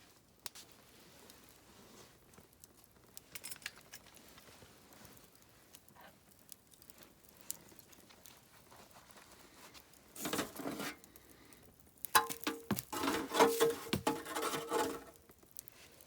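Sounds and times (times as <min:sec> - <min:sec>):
crinkling and rustling: 0:06.8 - 0:11.2, 0:12.1 - 0:16.0.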